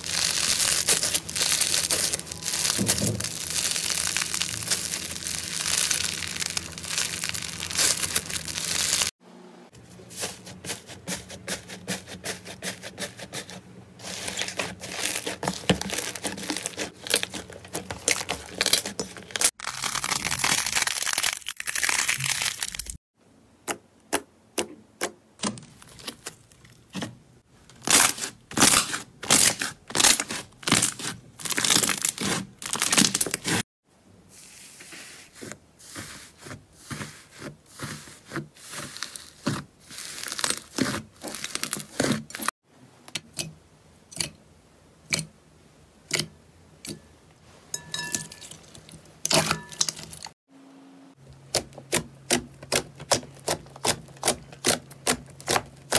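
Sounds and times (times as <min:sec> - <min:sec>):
slime crackling and popping: 0:00.0 - 0:09.1, 0:14.4 - 0:23.0.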